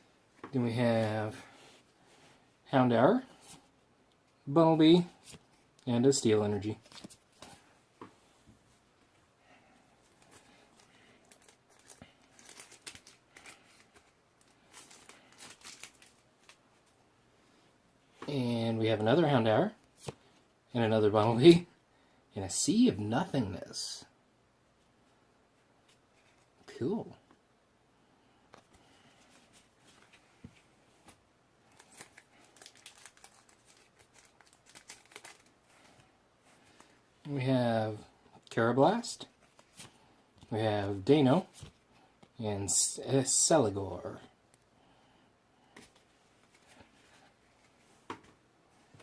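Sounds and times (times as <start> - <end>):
cards being handled: 6.8 - 8.2, 10.0 - 17.0, 28.5 - 37.0, 39.3 - 40.5, 45.7 - 49.0
foil wrapper crinkling and tearing: 11.2 - 16.6, 31.7 - 35.6.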